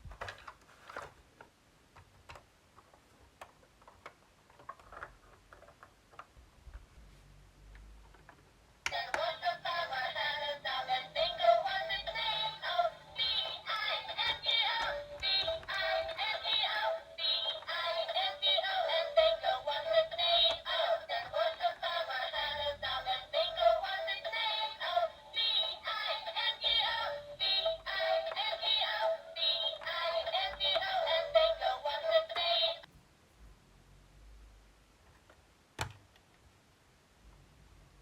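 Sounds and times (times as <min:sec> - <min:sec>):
synthetic sung melody: 0:08.9 - 0:32.9.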